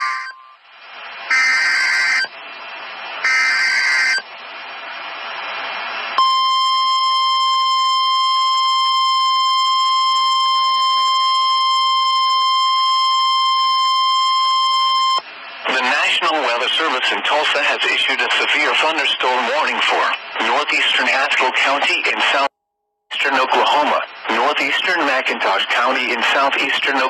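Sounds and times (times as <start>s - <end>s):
steady alert tone: 0.0s - 0.6s
electronic data bursts: 1.3s - 2.3s, 3.2s - 4.2s
radio hiss: 15.2s - 22.5s, 23.1s - 27.0s.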